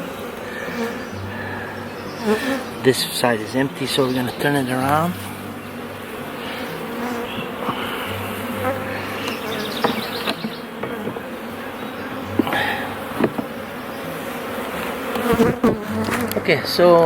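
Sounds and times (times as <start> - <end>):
honeybees buzzing: 0.0 - 17.0
sharp knocks: 9.8 - 11.2, 13.2 - 13.5.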